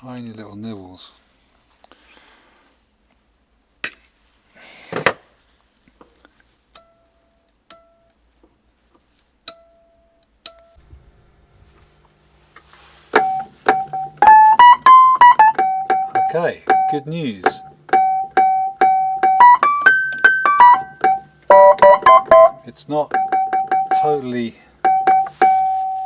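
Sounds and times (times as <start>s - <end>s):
amplifier hum: 10.8s - 26.0s
electric piano note: 13.2s - 26.0s.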